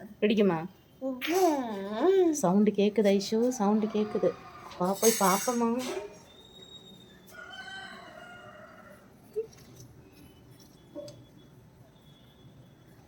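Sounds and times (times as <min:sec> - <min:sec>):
faint rooster crowing: 0:03.5 - 0:05.0, 0:06.5 - 0:09.5.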